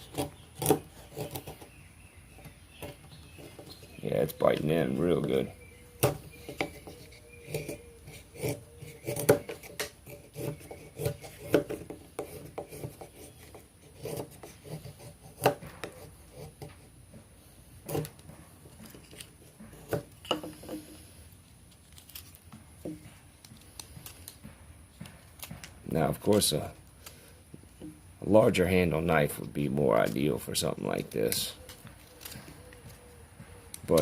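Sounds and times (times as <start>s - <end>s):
knife carving wood: 0.0s - 17.0s, 17.7s - 28.0s, 31.0s - 34.0s
blade scraping and knocking wood: 0.0s - 21.1s, 33.8s - 34.0s.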